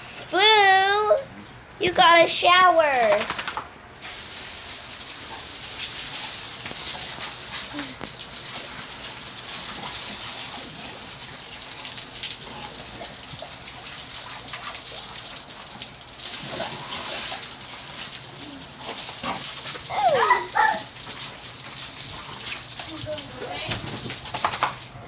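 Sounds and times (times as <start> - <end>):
water spraying: 2.0 - 25.0
puppy whining: 19.8 - 21.0.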